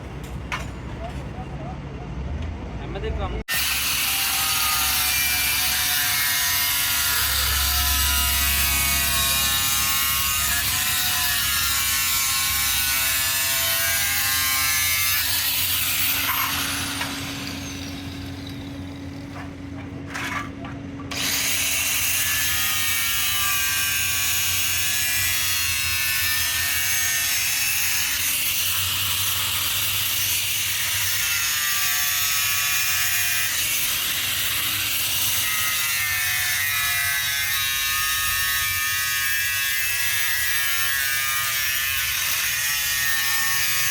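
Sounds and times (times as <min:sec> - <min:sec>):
power tool motor whining: 0:03.5 - 0:19.5, 0:21.1 - 0:25.5.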